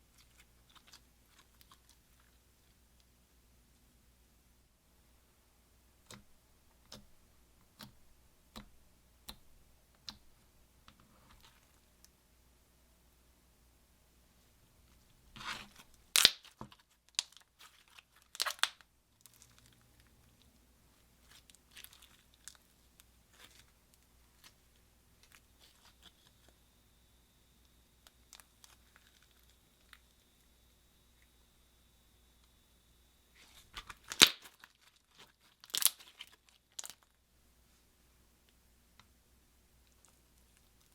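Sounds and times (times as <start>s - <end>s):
slime crackling and popping: 15.4s - 20.1s, 33.5s - 37.2s.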